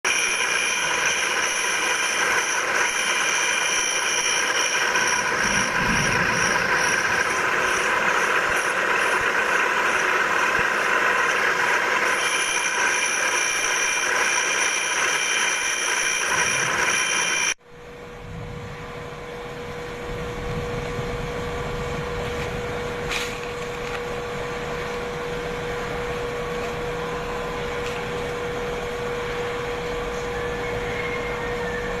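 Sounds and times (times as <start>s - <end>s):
grinding machine sharpening blade: 0.1s - 17.6s
low machine hum: 0.2s - 32.0s.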